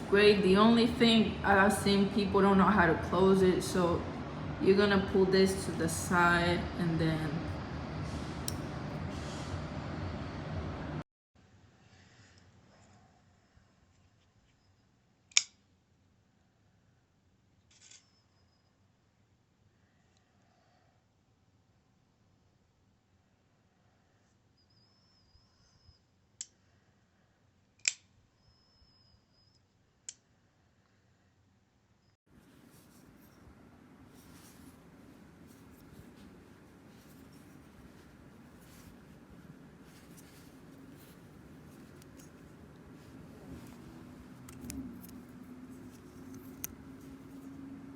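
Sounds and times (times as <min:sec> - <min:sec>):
steady low hum: 0:00.0 - 0:11.0, 0:32.3 - 0:47.9.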